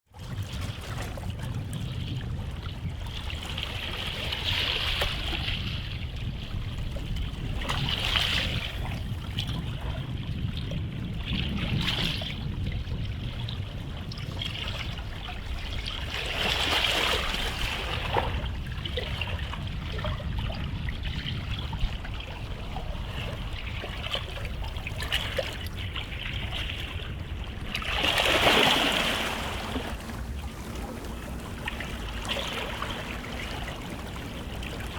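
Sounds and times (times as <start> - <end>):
small waves washing onto shore: 0.1 - 34.9
steady low rumble: 17.4 - 34.9.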